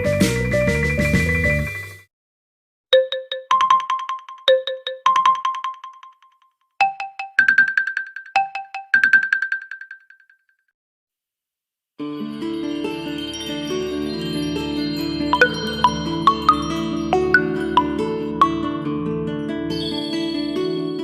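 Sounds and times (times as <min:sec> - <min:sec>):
ringtone melody of struck notes: 0:03.0 - 0:10.2, 0:12.2 - 0:18.9.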